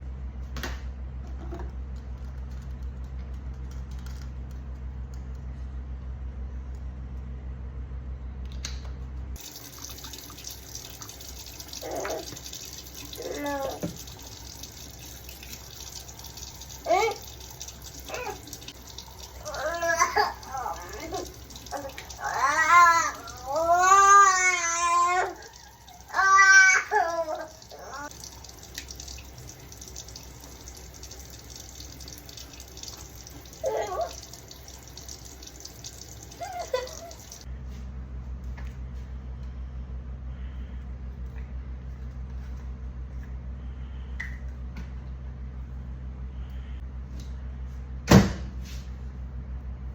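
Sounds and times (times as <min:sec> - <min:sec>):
low steady hum: 0:00.0 - 0:49.9
running water hissing: 0:09.4 - 0:37.5
small child's voice: 0:11.8 - 0:12.4, 0:13.1 - 0:14.0, 0:16.8 - 0:17.4, 0:18.1 - 0:28.1, 0:33.5 - 0:34.4.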